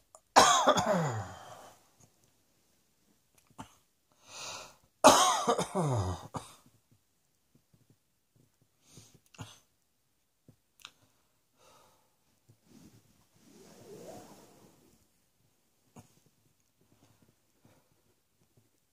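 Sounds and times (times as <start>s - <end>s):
person coughing: 0.4s - 1.5s, 5.1s - 6.6s
faint breaths: 4.1s - 4.9s, 11.0s - 15.0s.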